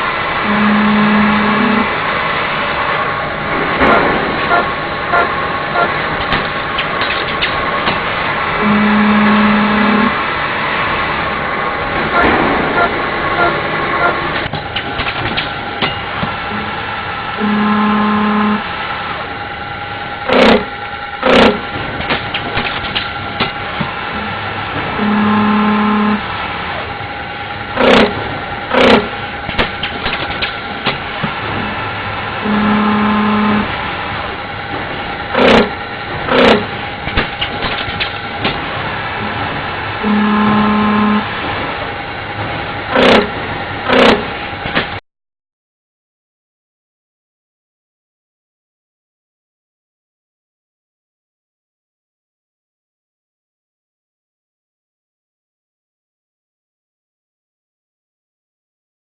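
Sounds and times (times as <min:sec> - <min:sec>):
lathe machine hum and whine: 0:00.0 - 0:14.8, 0:15.5 - 0:22.1, 0:23.0 - 0:45.0.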